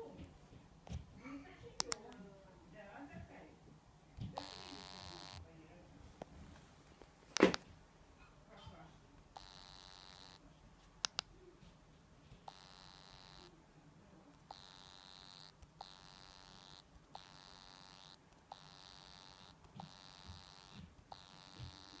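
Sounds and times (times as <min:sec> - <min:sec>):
high-pitched electronic buzz: 0:09.4 - 0:10.4, 0:12.5 - 0:13.5, 0:14.5 - 0:22.0.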